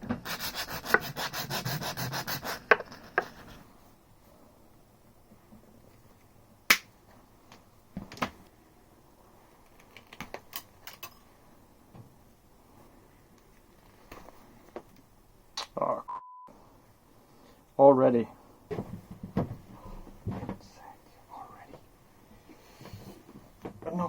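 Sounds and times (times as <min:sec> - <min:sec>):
rasping strokes: 0:00.2 - 0:03.6.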